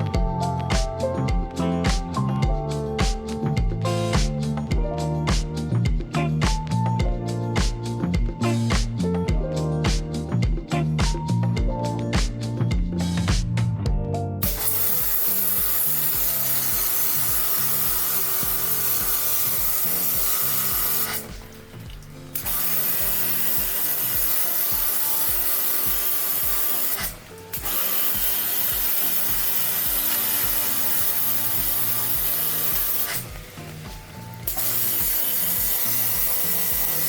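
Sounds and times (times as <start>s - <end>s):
water spray jet hissing: 14.4s - 37.0s.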